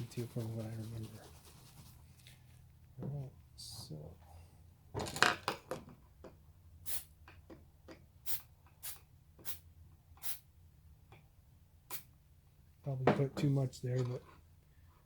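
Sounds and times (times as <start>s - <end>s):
aerosol can spraying: 6.9s - 7.1s, 8.2s - 9.6s, 10.2s - 10.4s, 11.9s - 12.1s.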